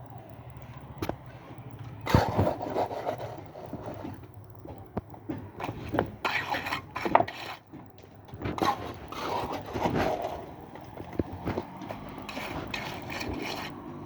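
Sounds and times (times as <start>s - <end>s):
hand tools scraping concrete: 5.6s - 7.8s, 8.4s - 14.0s.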